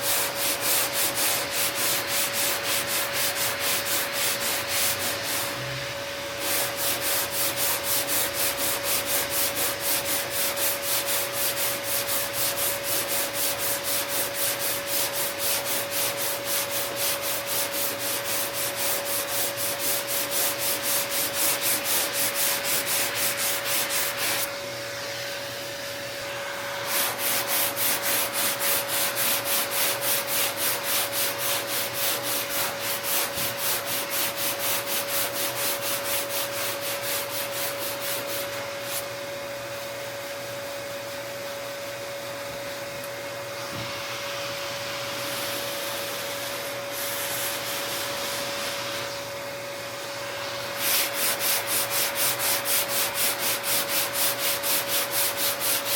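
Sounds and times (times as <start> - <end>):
sandpaper rubbing on metal: 0.0 - 5.6, 6.4 - 24.5, 26.8 - 39.0, 50.8 - 55.9.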